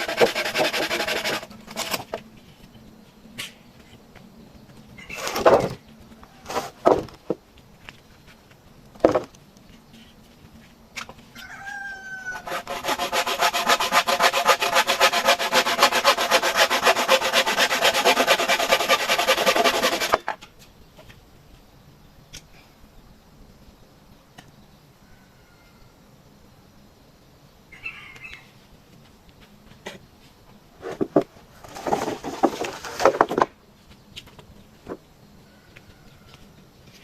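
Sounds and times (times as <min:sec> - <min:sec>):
handsaw cutting bamboo: 0:00.0 - 0:02.1, 0:12.4 - 0:20.3
chicken-like call: 0:11.4 - 0:12.8.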